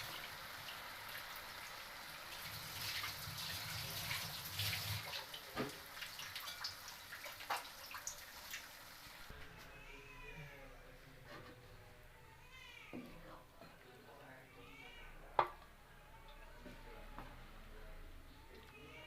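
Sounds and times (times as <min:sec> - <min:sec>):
tap water splashing in sink: 0:02.8 - 0:08.7.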